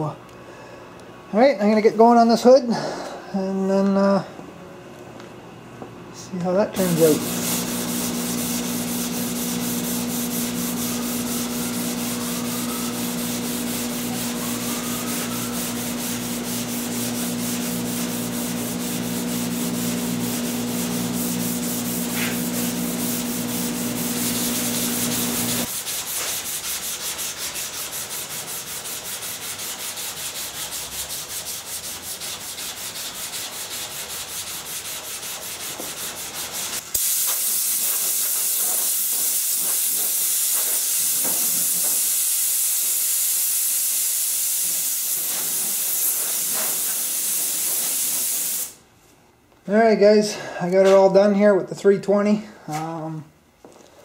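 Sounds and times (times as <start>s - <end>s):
steady hum: 2.6s - 25.8s
hand sanding strokes: 6.8s - 48.8s
steady hiss: 36.7s - 48.8s.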